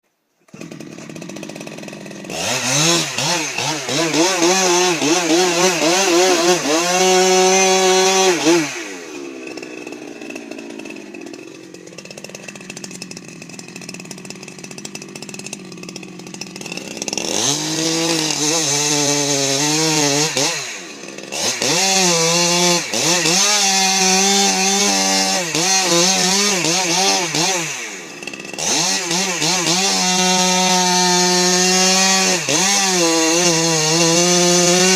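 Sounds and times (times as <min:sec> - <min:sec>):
chainsaw revving: 0:00.5 - 0:34.9.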